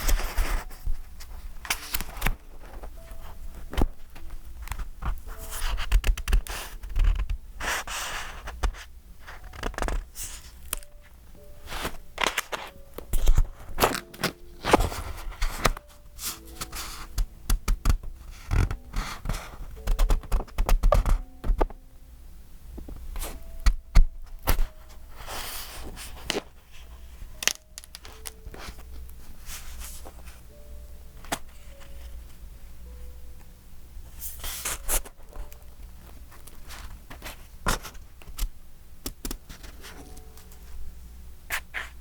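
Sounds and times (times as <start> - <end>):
paper pages rustling: 0.0 - 21.7, 24.4 - 30.5, 34.1 - 38.5.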